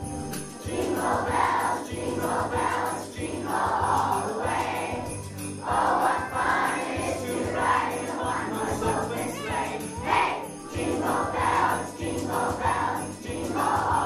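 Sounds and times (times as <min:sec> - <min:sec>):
jingle bells shaken: 0:00.0 - 0:14.0
music: 0:00.0 - 0:14.0
children's choir singing: 0:00.5 - 0:14.0.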